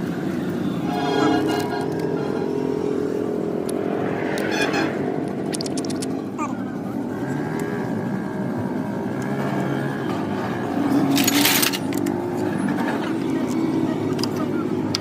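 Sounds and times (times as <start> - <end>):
sharp clicks: 5.3 - 6.2.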